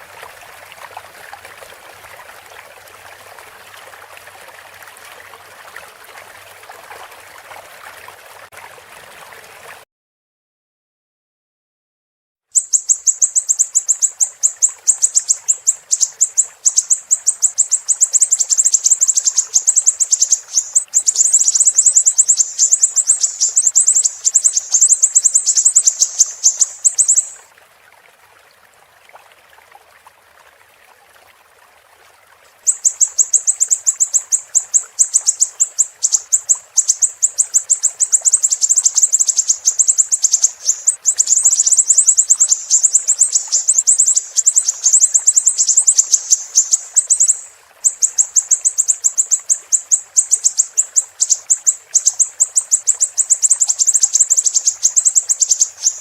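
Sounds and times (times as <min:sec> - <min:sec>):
flowing water hiss: 0:00.0 - 0:09.8, 0:12.5 - 0:56.0
bird singing high chirps: 0:12.5 - 0:27.4, 0:32.7 - 0:56.0.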